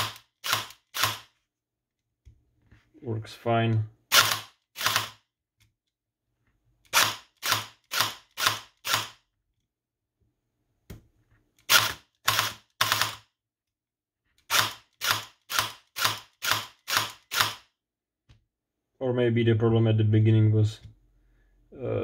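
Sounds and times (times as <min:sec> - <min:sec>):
airsoft gun whirring clacks: 0:00.0 - 0:01.4, 0:04.1 - 0:05.2, 0:06.9 - 0:09.2, 0:11.6 - 0:13.3, 0:14.5 - 0:17.7.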